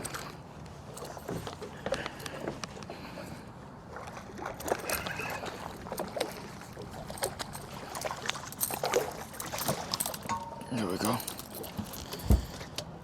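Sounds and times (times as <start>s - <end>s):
water splashing: 3.8s - 12.7s
clicks and knocks on boat: 7.2s - 13.0s.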